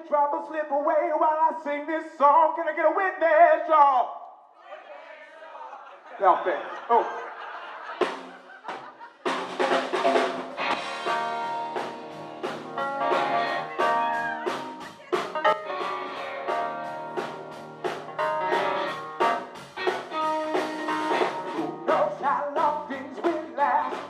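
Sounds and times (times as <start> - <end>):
soul band playing: 7.6 - 24.0
drum hits: 8.0 - 24.0.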